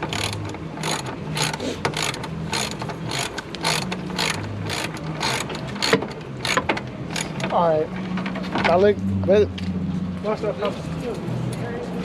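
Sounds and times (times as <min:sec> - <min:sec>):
ratcheting strokes: 0:00.0 - 0:07.5.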